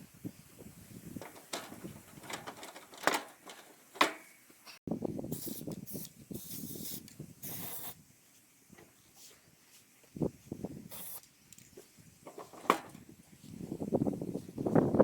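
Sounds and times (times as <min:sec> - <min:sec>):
short spray hisses: 0:05.3 - 0:08.0, 0:10.9 - 0:11.3.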